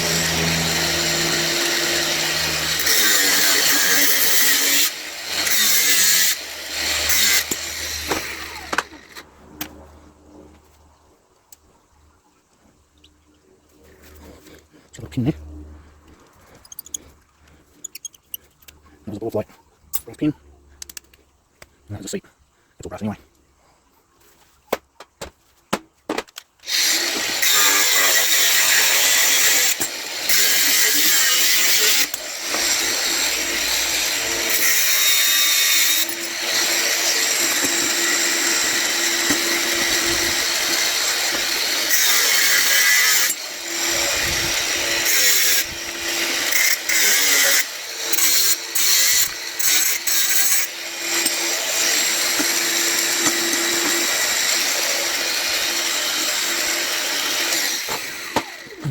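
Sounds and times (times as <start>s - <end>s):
power tool cutting metal: 0.0s - 10.6s, 26.6s - 58.9s.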